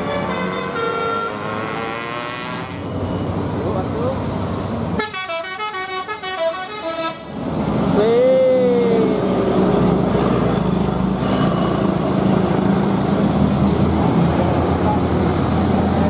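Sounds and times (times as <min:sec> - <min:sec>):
bus musical horn tune: 0:00.0 - 0:01.6, 0:05.0 - 0:07.3
bus engine running: 0:00.0 - 0:16.0.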